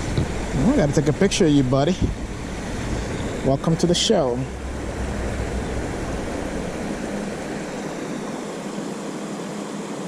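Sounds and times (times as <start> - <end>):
low rumble: 4.4 - 8.4.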